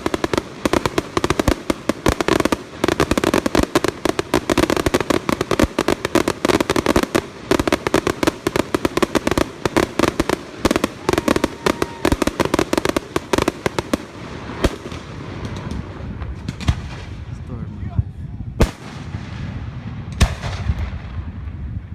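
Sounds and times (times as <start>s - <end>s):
fireworks crackling pops: 0.0s - 17.2s, 18.6s - 21.9s
firework bang: 18.6s - 21.7s.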